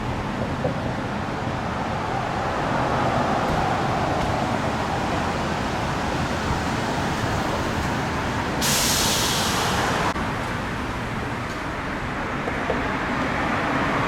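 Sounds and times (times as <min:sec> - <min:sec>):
road traffic noise: 0:00.0 - 0:14.0
loud sharp hiss: 0:08.6 - 0:10.1.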